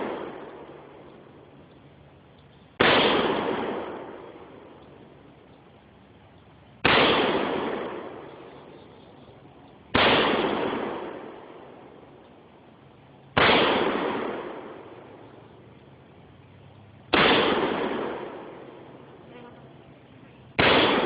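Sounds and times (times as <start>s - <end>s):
rifle shots: 0.0s - 1.2s, 2.8s - 4.9s, 6.8s - 8.9s, 9.9s - 12.0s, 13.3s - 15.4s, 17.1s - 19.2s, 20.5s - 21.0s.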